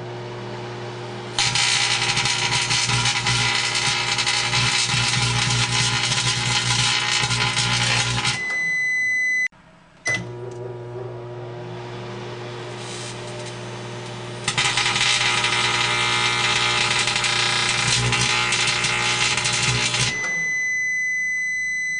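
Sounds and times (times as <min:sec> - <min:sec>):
microwave oven hum: 0:00.0 - 0:21.9
electrical arcing buzz: 0:01.3 - 0:08.4, 0:12.7 - 0:20.2
microwave oven beeps: 0:01.4 - 0:10.6, 0:14.5 - 0:21.9.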